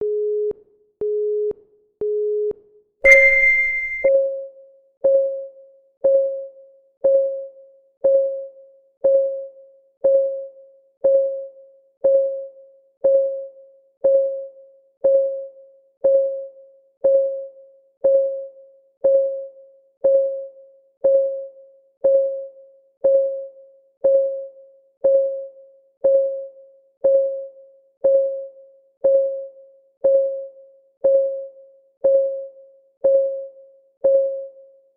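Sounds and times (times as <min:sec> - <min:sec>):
higher start tone: 0:03.1 - 0:04.1
pitched electronic ticks: 0:03.1 - 0:04.1
timer electronic beeps: 0:03.1 - 0:04.1.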